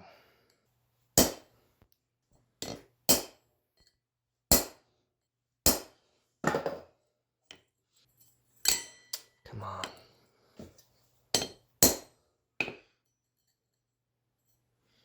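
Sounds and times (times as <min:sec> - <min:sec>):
hammer striking metal: 0:04.5 - 0:04.8, 0:05.7 - 0:05.9.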